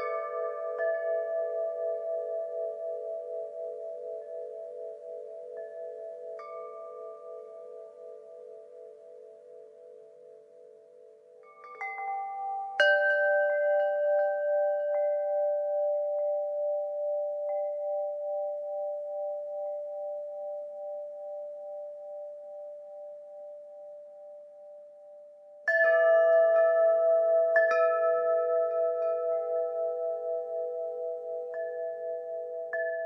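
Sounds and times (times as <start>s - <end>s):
wind chimes ringing: 11.4s - 22.0s, 25.6s - 33.0s.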